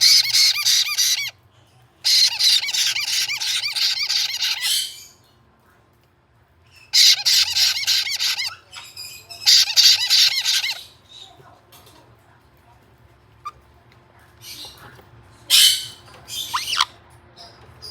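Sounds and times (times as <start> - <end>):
parrot chick begging squawks: 0.0 - 1.4, 2.0 - 5.2, 6.8 - 11.0, 15.5 - 17.0.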